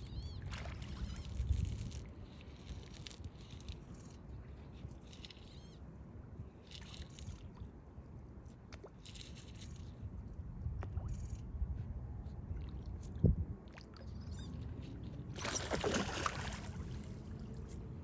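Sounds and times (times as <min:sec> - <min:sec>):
water sloshing and splashing: 0:00.3 - 0:03.4, 0:12.5 - 0:18.0
faint bird chirps: 0:14.0 - 0:14.7.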